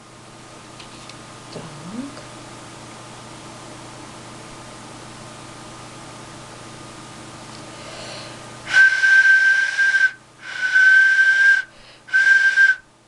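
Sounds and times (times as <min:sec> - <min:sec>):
clay whistle high tone: 0:08.7 - 0:12.8.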